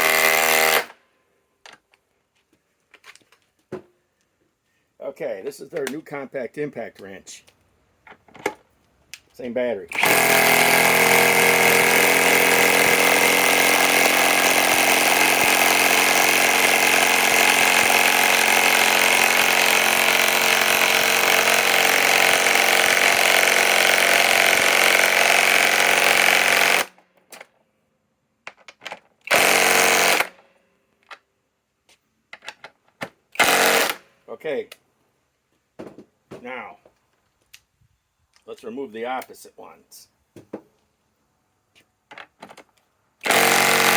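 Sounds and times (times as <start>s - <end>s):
impact wrench hammering: 43.2s - 43.9s.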